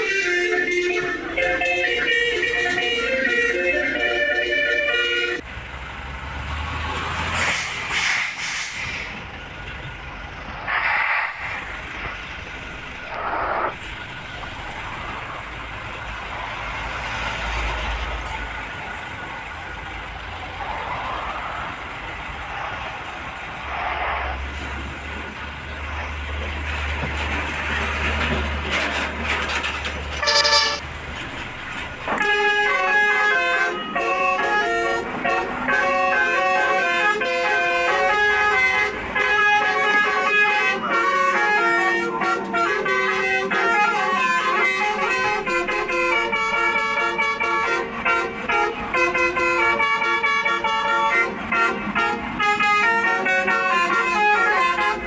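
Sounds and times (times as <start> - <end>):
bus air horn blasts: 0.0 - 5.4, 30.2 - 30.8, 32.1 - 55.0
music: 0.0 - 5.4, 32.2 - 55.0
bus engine rumble: 0.0 - 55.0
traffic noise: 0.0 - 55.0.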